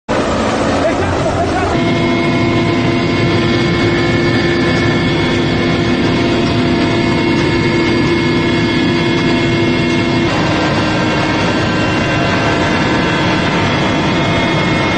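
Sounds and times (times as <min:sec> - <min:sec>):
helicopter engine and rotors: 0:00.1 - 0:14.9.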